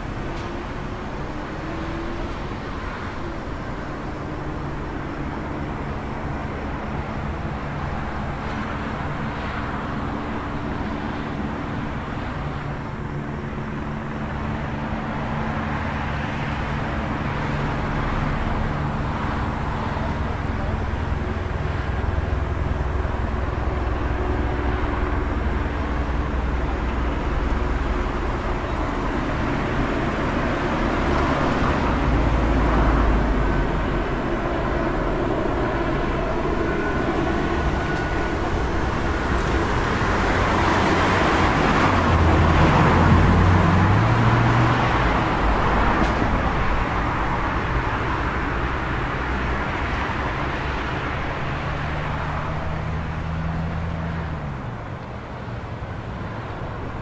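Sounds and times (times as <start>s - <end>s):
hum of traffic: 0.0s - 57.0s
vehicle passing: 17.5s - 54.4s.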